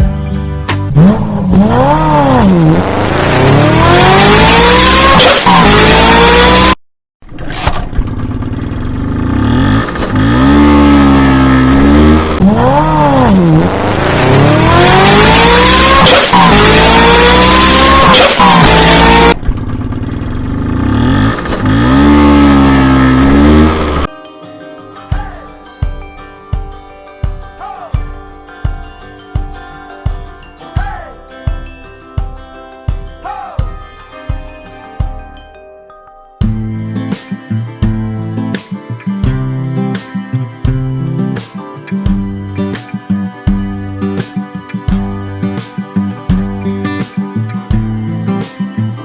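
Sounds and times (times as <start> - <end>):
engine revving hard: 0.9 - 6.8, 8.5 - 19.4, 20.4 - 24.1.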